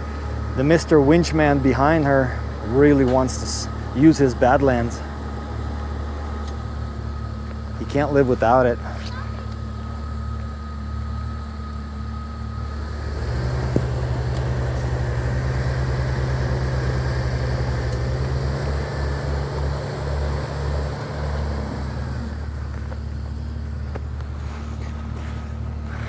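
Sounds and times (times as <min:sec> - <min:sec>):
engine running under load: 0:00.0 - 0:26.0.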